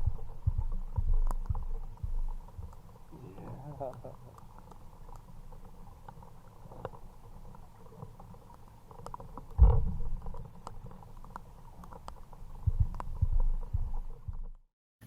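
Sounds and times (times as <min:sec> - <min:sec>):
low thumps in a kayak: 0:00.0 - 0:02.9, 0:09.5 - 0:10.6, 0:12.6 - 0:14.7
raindrops ticking on a kayak: 0:00.0 - 0:14.6.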